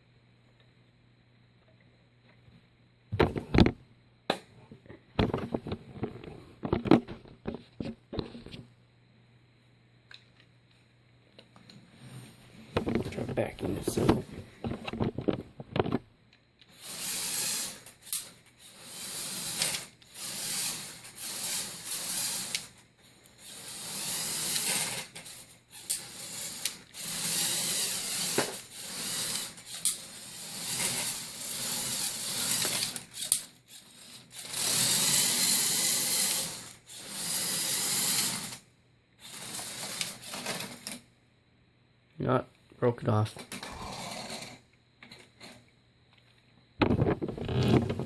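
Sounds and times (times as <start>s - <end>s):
toy electric motors whirring and rattling: 16.6s - 41.0s, 43.4s - 45.6s.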